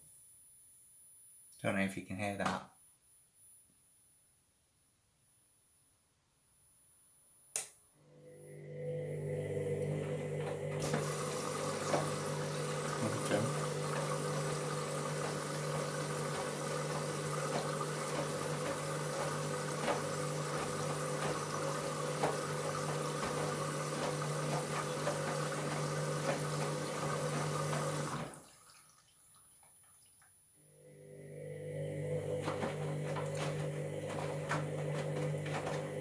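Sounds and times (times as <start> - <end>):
washing machine hum: 8.0 - 36.0
water rushing into washing machine: 8.2 - 36.0.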